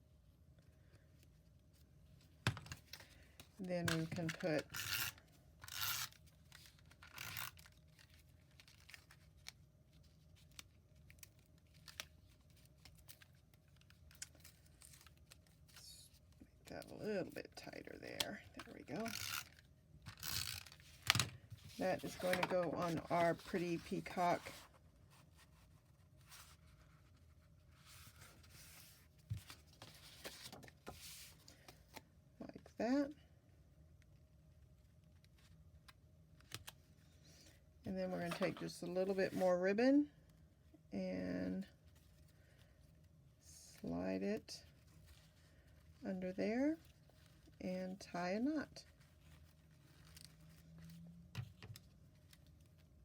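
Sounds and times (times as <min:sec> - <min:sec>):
paper rustling: 0:20.5 - 0:32.0, 0:48.8 - 0:52.9.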